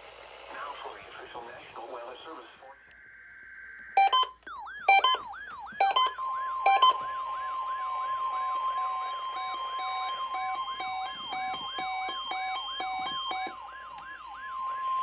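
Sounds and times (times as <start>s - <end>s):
warbling siren: 3.0s - 15.0s
steady alarm tone: 3.9s - 15.0s
loud alarm beeps: 4.0s - 15.0s.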